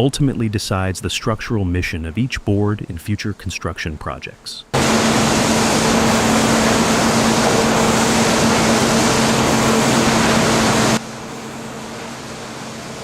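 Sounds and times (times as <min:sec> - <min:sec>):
sawmill machinery noise: 0:04.7 - 0:13.0
low hum: 0:04.8 - 0:13.0.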